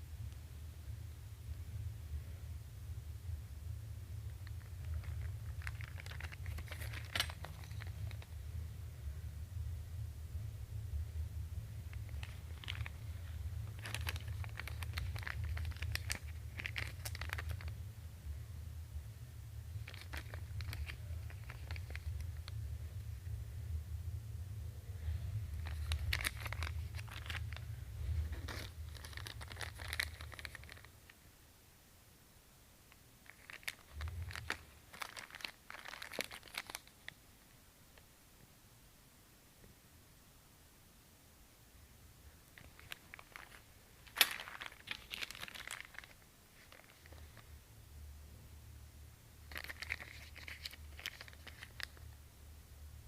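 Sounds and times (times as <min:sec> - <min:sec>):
steady low hum: 0:00.0 - 0:53.0
crinkling: 0:04.2 - 0:08.7, 0:11.3 - 0:18.4, 0:19.6 - 0:23.4, 0:24.9 - 0:31.2, 0:32.9 - 0:38.1, 0:42.3 - 0:47.7, 0:49.4 - 0:52.3.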